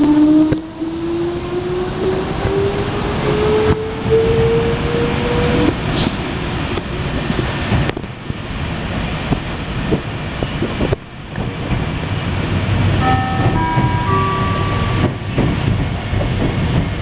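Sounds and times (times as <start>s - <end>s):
train running noise: 0.0s - 17.0s
train chime rising notes: 12.9s - 15.9s.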